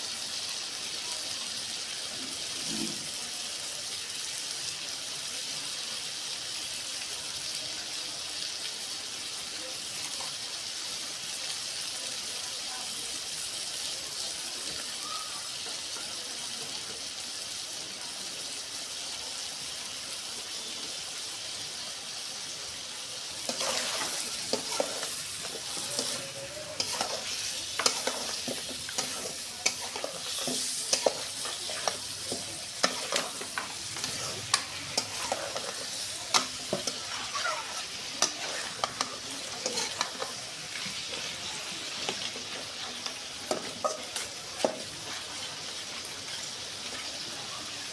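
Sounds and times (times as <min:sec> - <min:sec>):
food sizzling in hot oil: 0:00.0 - 0:47.9
utensil scraping a pan: 0:23.4 - 0:45.3.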